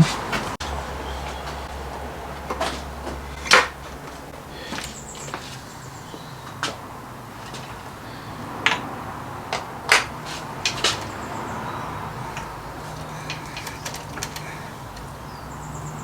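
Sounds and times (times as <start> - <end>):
tools and bike parts clicking: 8.6 - 9.0, 9.6 - 15.2.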